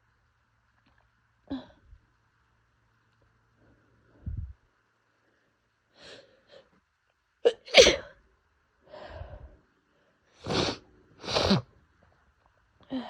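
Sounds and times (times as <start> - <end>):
woman sneezing: 7.5 - 8.1, 10.5 - 11.6.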